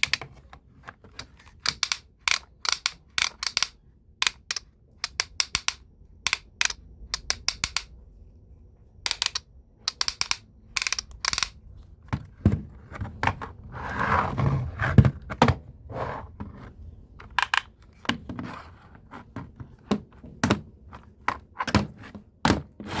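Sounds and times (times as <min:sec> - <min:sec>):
sharp knocks and clicks: 0:01.6 - 0:08.0, 0:09.1 - 0:11.6.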